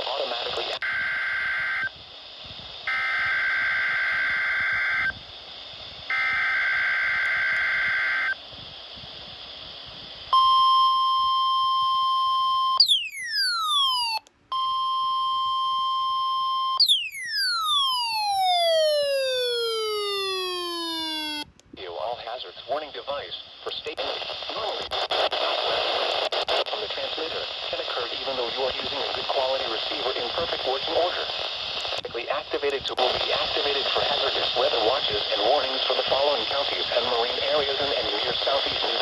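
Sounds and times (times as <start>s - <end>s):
buzzy data tones: 0.2s - 2.0s.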